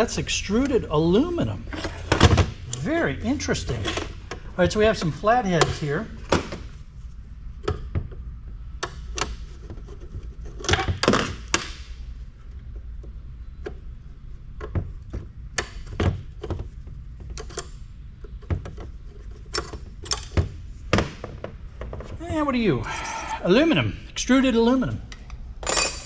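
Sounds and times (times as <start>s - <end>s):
screwdriver and parts clattering: 25.6s - 26.0s.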